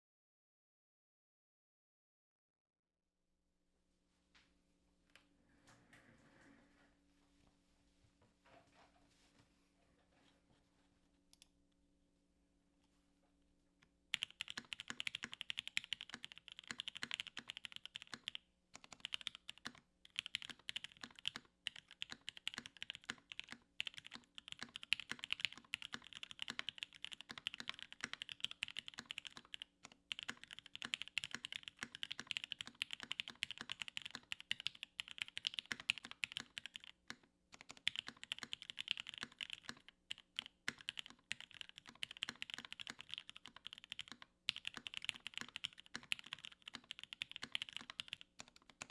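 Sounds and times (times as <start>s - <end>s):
mechanical keyboard typing: 14.1s - 48.9s.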